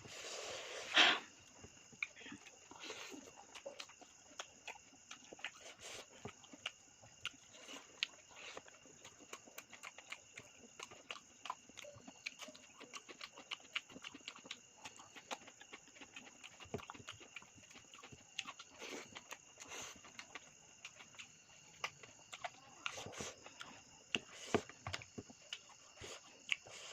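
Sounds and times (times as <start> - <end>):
faint steady hiss: 0.0 - 4.6
person chewing: 1.0 - 26.9.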